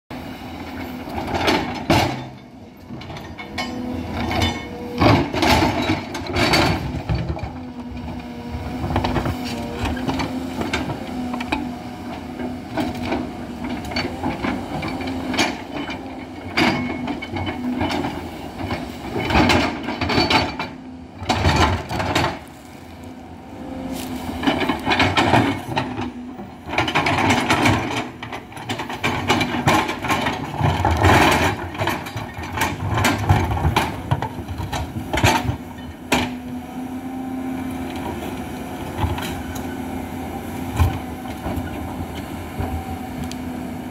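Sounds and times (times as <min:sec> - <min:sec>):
excavator diesel engine humming: 0:00.2 - 0:43.9
machine clanks and knocks: 0:01.1 - 0:07.6, 0:12.4 - 0:22.5, 0:24.4 - 0:36.4.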